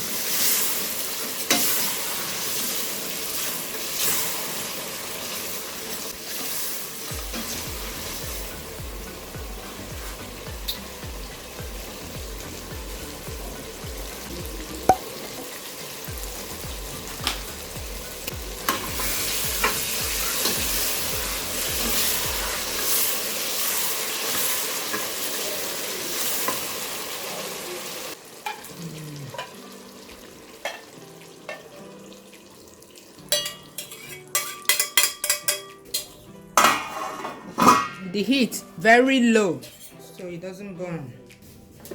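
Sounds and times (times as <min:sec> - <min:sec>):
food sizzling in a pot: 0:00.0 - 0:38.8
spoon clinking against pot: 0:33.3 - 0:38.0.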